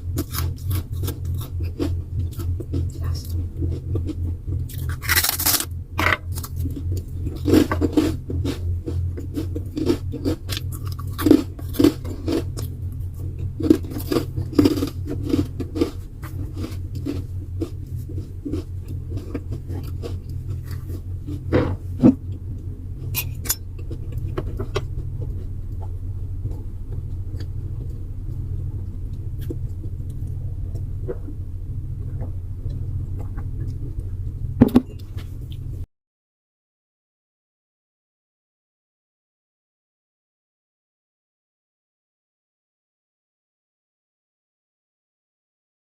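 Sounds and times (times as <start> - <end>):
steady low hum: 0.0 - 35.9.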